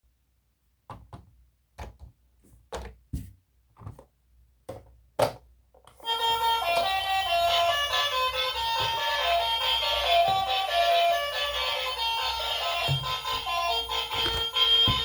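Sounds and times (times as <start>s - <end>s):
music: 6.0s - 15.0s.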